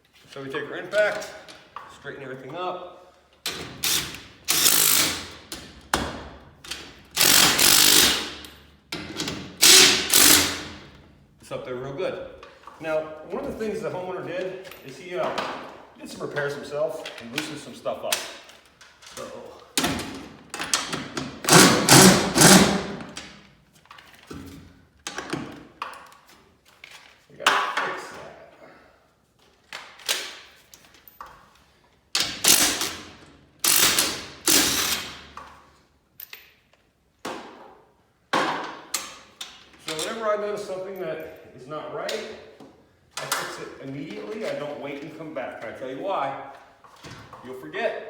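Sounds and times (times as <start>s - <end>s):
impact driver hammering: 7.2s - 8.4s, 9.6s - 10.8s, 21.4s - 23.2s, 32.2s - 35.1s.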